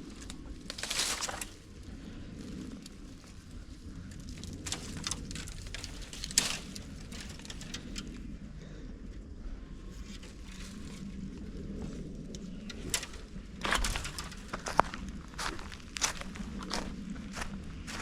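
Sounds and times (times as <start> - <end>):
steady low rumble: 0.0 - 18.0
plant stems snapping: 0.1 - 1.6, 4.2 - 8.2, 12.3 - 14.9.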